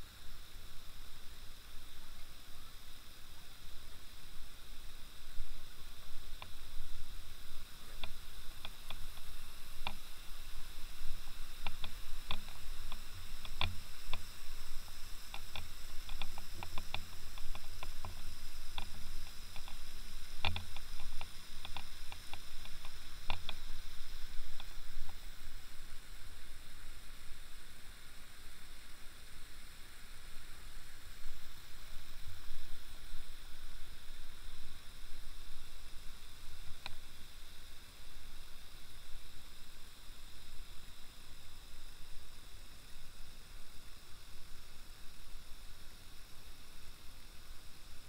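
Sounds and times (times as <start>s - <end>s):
steady hiss: 0.0s - 48.0s
sharp clicks and light taps: 8.0s - 10.7s, 11.6s - 23.8s.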